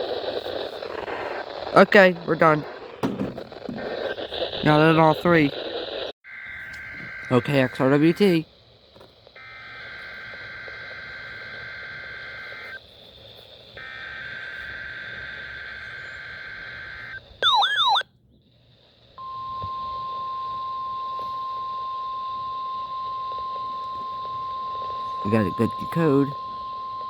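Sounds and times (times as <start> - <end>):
radio hiss: 0.0 - 17.3, 22.2 - 27.0
screechy data bursts: 0.7 - 12.8, 13.4 - 18.0, 21.2 - 27.0
steady warning alarm tone: 1.8 - 5.4, 6.3 - 8.4, 9.4 - 12.8, 13.8 - 18.0, 19.2 - 27.0.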